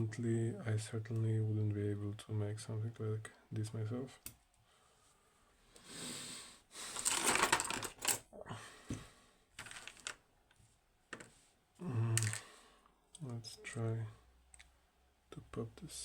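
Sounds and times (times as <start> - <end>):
metal parts rattling: 7.0 - 8.2, 9.6 - 10.2.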